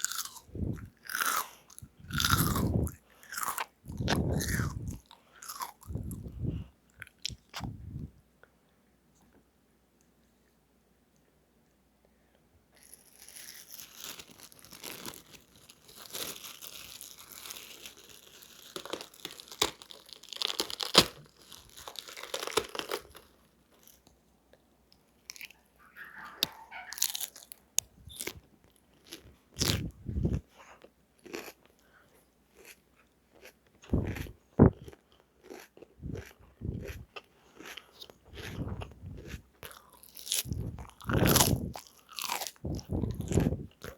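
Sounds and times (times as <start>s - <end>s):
crunchy chewing: 0.0s - 8.1s, 12.8s - 43.9s
wet mouth clicks: 2.5s - 3.0s, 3.6s - 5.0s, 40.4s - 41.8s.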